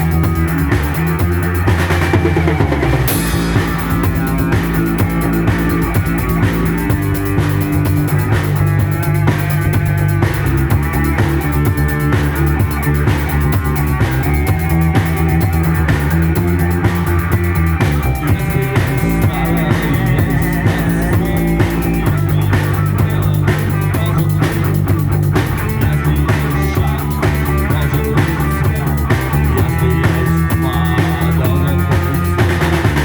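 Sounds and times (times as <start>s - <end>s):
bass line: 0.0s - 33.0s
drums keeping a steady beat: 0.0s - 33.0s
rock guitars: 0.0s - 33.0s.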